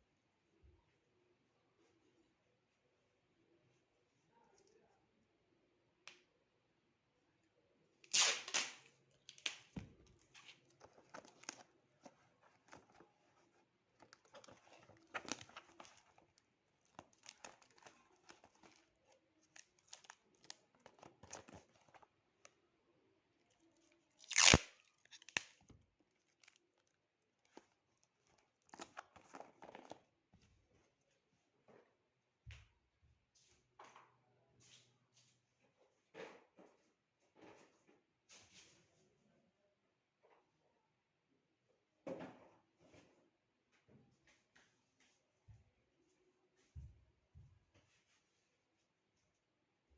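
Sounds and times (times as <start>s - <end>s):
packaging ripping: 8.1s - 9.6s, 24.2s - 25.6s
packaging crinkling and rustling: 9.3s - 22.1s, 23.8s - 30.1s.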